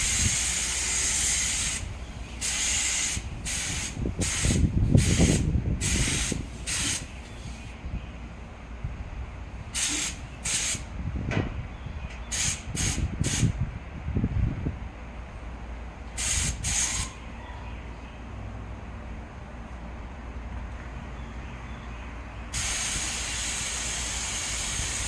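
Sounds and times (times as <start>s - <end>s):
spray paint can hissing: 0.0s - 7.2s, 9.8s - 10.8s, 12.3s - 13.5s, 16.2s - 17.1s, 22.5s - 25.0s.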